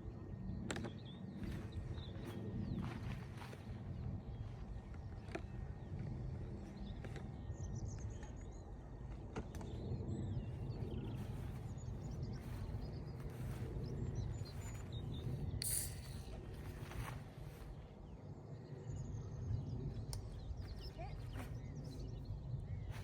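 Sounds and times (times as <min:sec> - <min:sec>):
wind rumbling on microphone: 0:00.0 - 0:23.0
birds chirping faintly: 0:00.2 - 0:23.0
sharp rustle: 0:15.6 - 0:17.2.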